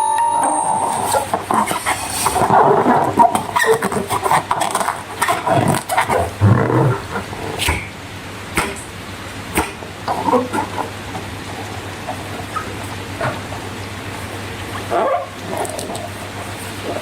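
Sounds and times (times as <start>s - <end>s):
sharp snaps: 8.6s - 8.9s, 9.5s - 9.9s.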